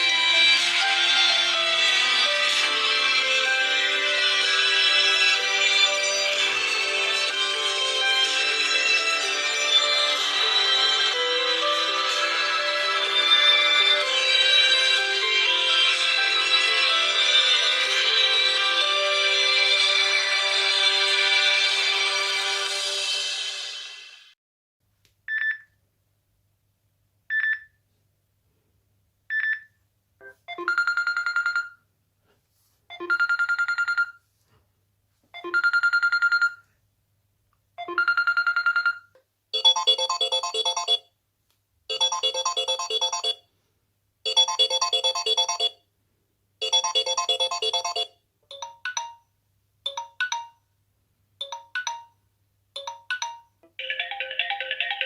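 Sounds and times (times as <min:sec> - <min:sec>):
melodic chime ringtone: 0:39.6 - 0:41.0, 0:41.9 - 0:43.4, 0:44.3 - 0:45.8, 0:46.6 - 0:49.2, 0:49.9 - 0:50.6, 0:51.4 - 0:52.2, 0:52.8 - 0:55.0
buzzy electronic ringtone: 0:39.6 - 0:41.1, 0:41.9 - 0:43.4, 0:44.3 - 0:45.8, 0:46.6 - 0:49.2, 0:52.8 - 0:55.0.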